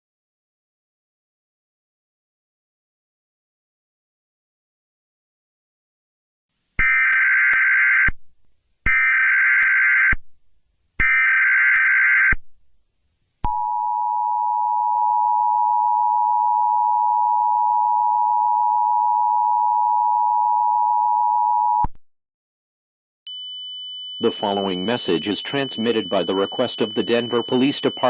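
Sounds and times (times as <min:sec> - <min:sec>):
steady two-pitch alert tone: 0:24.2 - 0:28.0
raspy warbling data bursts: 0:24.3 - 0:28.0.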